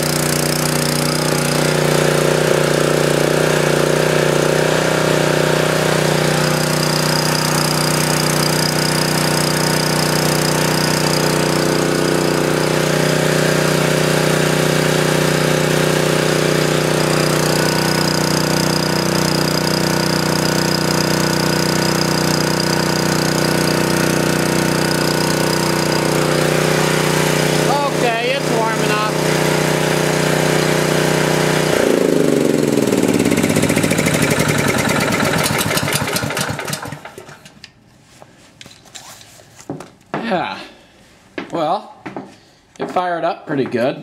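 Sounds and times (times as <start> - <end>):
generator engine running: 0.0 - 37.6.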